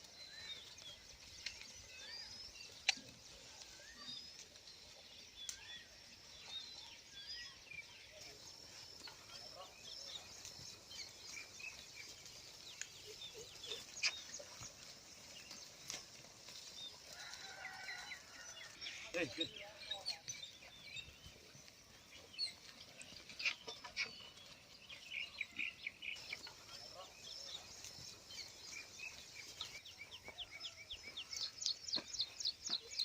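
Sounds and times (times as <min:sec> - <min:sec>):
small birds chirping: 0:00.0 - 0:33.0.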